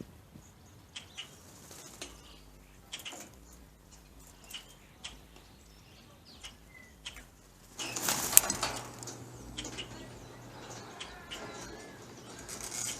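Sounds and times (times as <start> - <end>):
bird wings flapping: 1.2 - 2.2, 7.7 - 9.1.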